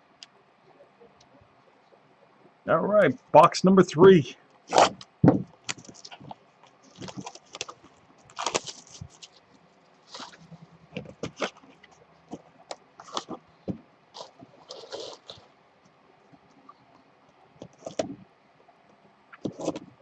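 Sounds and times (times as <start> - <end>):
card packs handled: 5.6 - 9.4, 10.0 - 13.4
card box rustling and scraping: 10.0 - 13.4.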